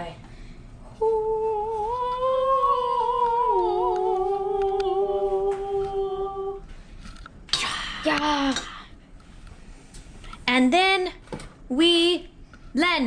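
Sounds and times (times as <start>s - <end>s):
person humming: 1.0s - 6.6s.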